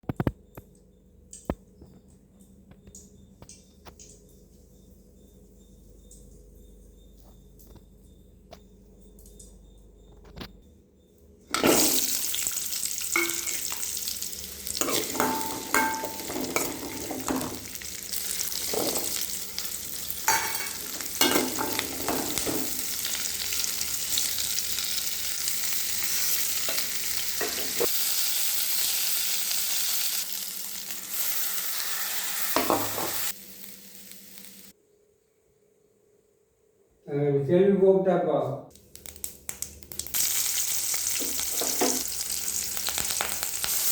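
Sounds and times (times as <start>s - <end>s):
food sizzling in hot oil: 11.5s - 34.8s, 38.9s - 43.9s
spoon scraping a pan: 13.1s - 13.9s, 14.8s - 23.1s, 26.1s - 27.9s.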